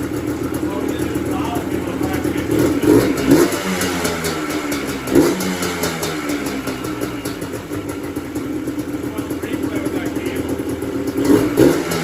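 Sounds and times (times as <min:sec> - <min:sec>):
two-stroke engine revving: 0:00.0 - 0:12.0.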